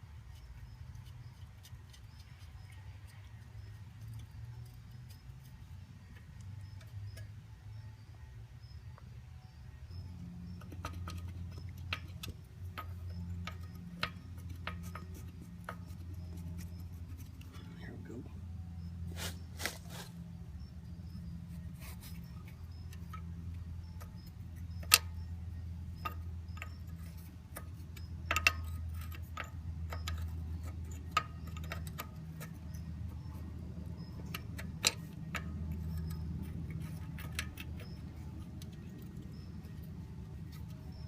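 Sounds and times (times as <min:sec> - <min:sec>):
steady low hum: 0:00.0 - 0:41.0
hand tools clinking on metal: 0:21.8 - 0:41.0.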